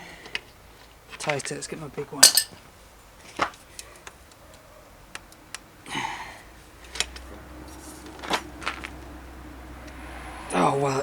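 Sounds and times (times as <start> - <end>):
low steady hum: 1.8 - 11.0
metal hand tools clicking: 2.2 - 2.6.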